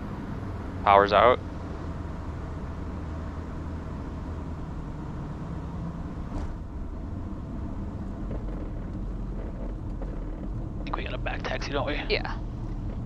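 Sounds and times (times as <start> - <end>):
aircraft engine idling drone: 0.0 - 2.0, 10.8 - 12.7.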